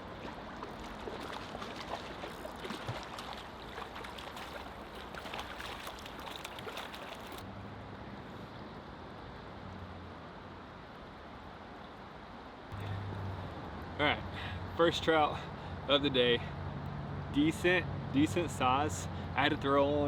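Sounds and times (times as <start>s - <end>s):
stream water running: 0.0s - 7.5s.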